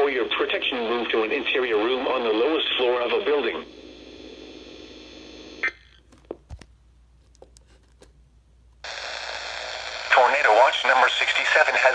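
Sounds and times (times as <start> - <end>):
radio receiver hiss: 0.0 - 5.7, 8.8 - 11.9.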